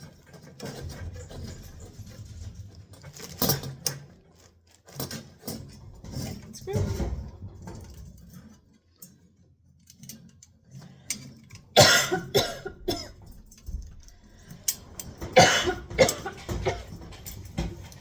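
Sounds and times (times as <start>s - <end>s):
person coughing: 11.8s - 13.2s, 15.4s - 16.9s.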